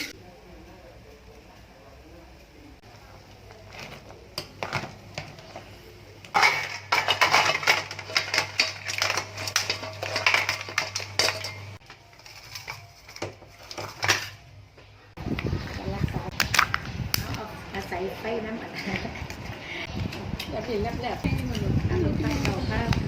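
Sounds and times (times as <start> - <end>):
metal utensils clattering on dishes: 6.3 - 14.5.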